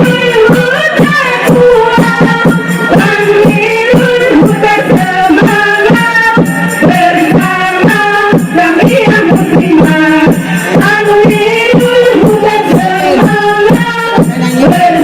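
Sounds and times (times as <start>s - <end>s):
frame drums beating: 0.0s - 15.0s
person singing: 0.0s - 15.0s.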